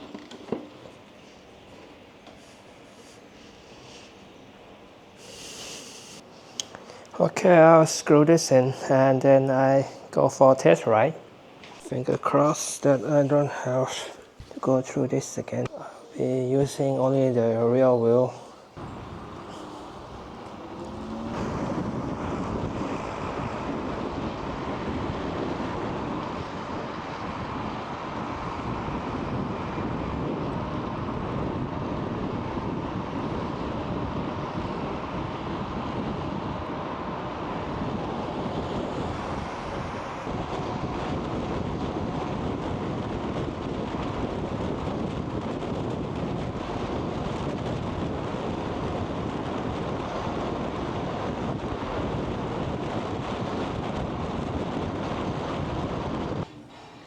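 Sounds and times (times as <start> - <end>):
scooter rolling noise: 0.0 - 3.3, 18.8 - 56.5
wind rushing over microphone: 0.0 - 56.9.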